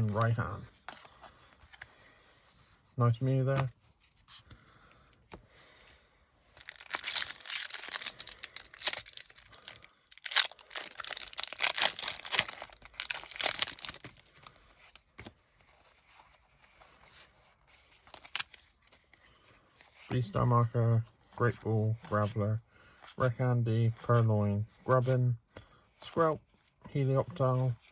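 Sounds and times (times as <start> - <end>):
foil wrapper tearing and crinkling: 6.6 - 14.6.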